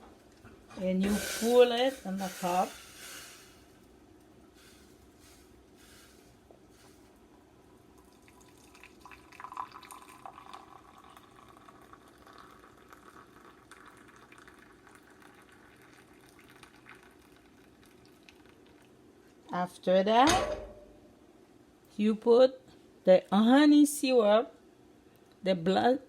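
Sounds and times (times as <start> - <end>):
tea pouring into cup: 7.3 - 19.0.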